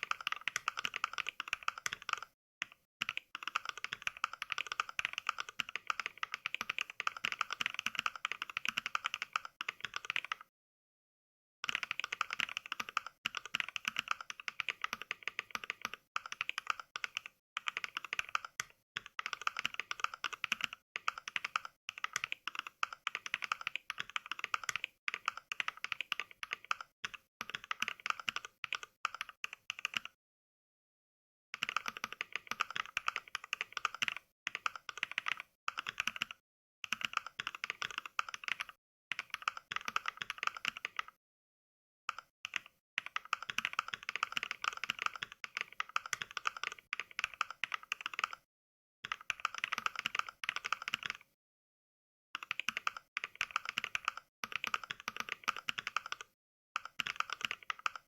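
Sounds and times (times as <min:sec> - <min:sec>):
sampled keyboard clicks: 0:00.0 - 0:10.5, 0:11.6 - 0:30.2, 0:31.6 - 0:41.2, 0:42.1 - 0:48.4, 0:49.1 - 0:51.4, 0:52.4 - 0:58.0.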